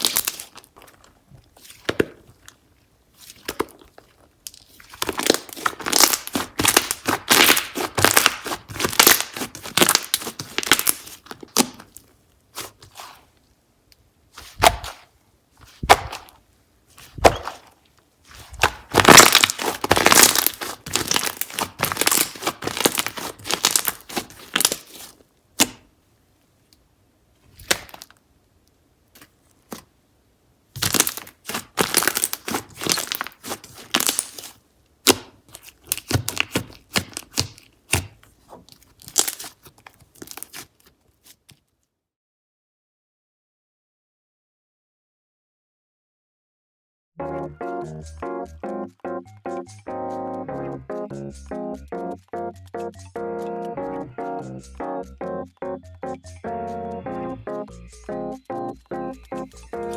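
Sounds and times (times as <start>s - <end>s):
slime clicking and popping: 5.0s - 11.9s, 18.6s - 25.0s, 30.8s - 38.1s, 39.0s - 39.5s.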